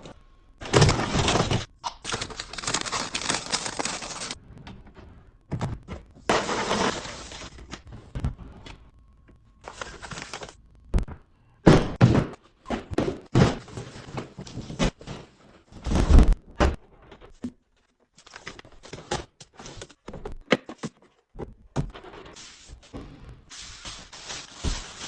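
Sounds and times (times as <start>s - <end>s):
household items thunking and clattering: 11.0s - 17.6s.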